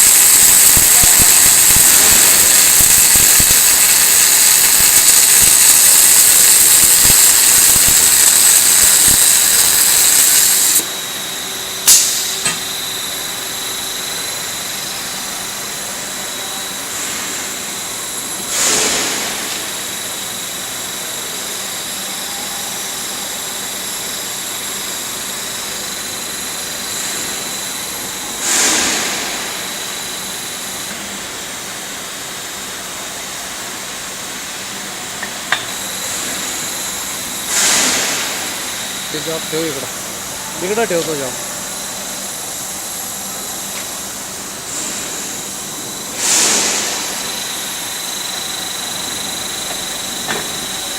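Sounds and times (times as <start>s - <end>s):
short bursts of hiss: 0.0s - 10.8s
thin high whine: 0.0s - 18.9s, 35.2s - 50.9s
welding machine hiss: 0.0s - 50.9s
sharp click: 11.9s - 12.7s.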